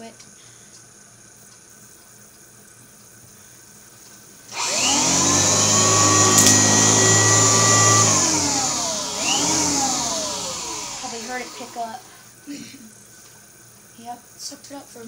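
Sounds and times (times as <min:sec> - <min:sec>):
vacuum cleaner motor whine: 0:04.5 - 0:12.3.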